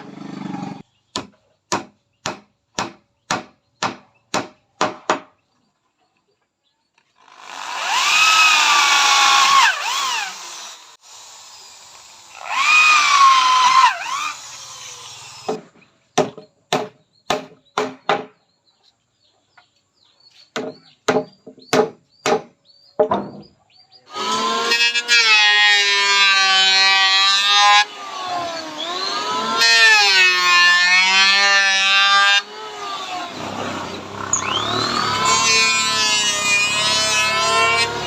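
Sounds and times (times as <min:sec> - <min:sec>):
power tool cutting wood: 0:07.2 - 0:15.6, 0:24.1 - 0:38.0
knocks on wood: 0:16.2 - 0:18.4, 0:20.6 - 0:23.5.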